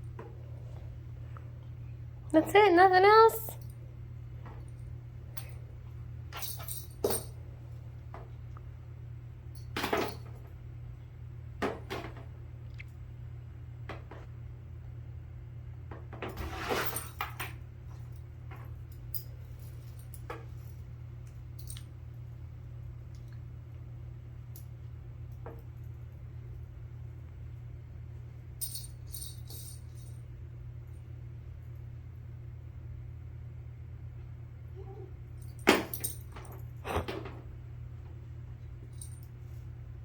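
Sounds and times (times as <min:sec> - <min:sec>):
steady low hum: 0:00.0 - 0:40.0
leash hardware jangling: 0:06.3 - 0:07.4, 0:28.6 - 0:30.2, 0:35.4 - 0:36.9.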